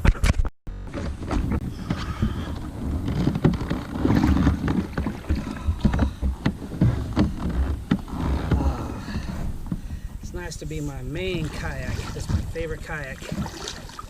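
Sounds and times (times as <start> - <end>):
plastic kayak knocking: 0.9 - 10.1, 11.2 - 14.0
wind buffeting microphone: 0.9 - 13.7.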